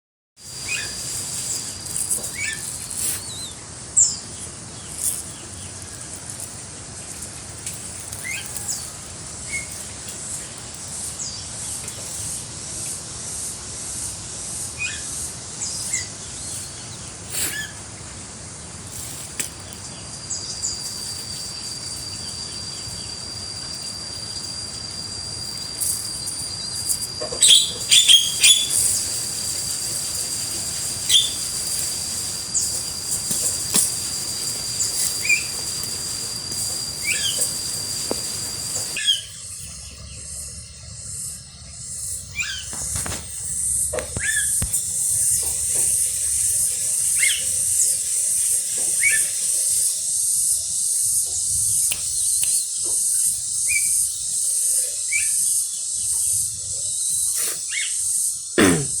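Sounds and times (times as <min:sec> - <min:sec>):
steady high-pitched whine: 0:00.4 - 0:52.3
bird chirps: 0:00.5 - 0:06.1, 0:19.6 - 0:40.5
sharp clicks and flutters: 0:25.6 - 0:39.0.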